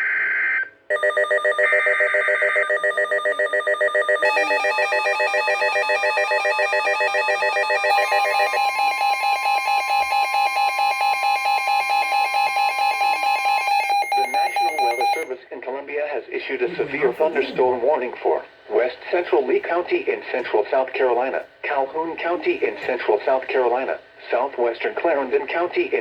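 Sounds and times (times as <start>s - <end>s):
pulsing electronic alarm: 0.4s - 15.3s.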